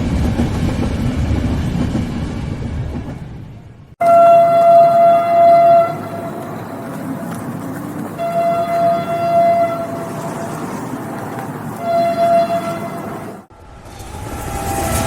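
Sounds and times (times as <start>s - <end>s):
train rumbling: 0.0s - 15.0s
train horn blasts: 4.0s - 6.4s, 8.2s - 10.4s, 11.8s - 13.4s.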